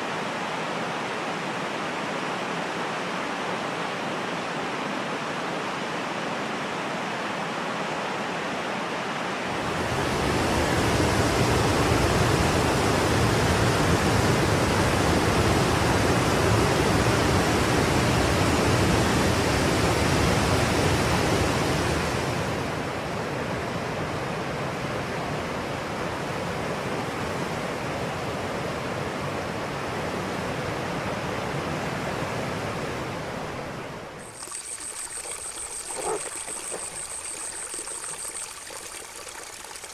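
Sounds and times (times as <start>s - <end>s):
river water gurgling and rushing: 0.0s - 39.9s.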